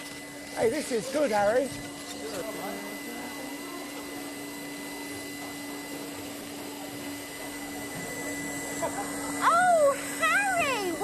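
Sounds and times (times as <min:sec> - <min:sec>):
small electric motor whirring: 0:00.0 - 0:11.0.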